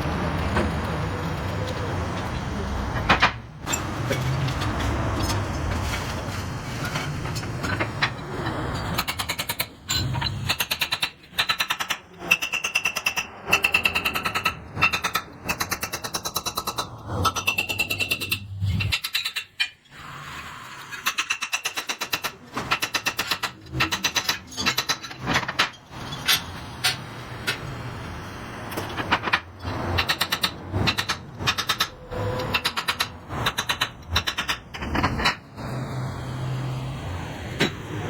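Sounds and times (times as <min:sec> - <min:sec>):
workshop machine noise: 0:00.0 - 0:38.0
rapid mechanical rattling: 0:21.0 - 0:27.7, 0:28.8 - 0:36.3.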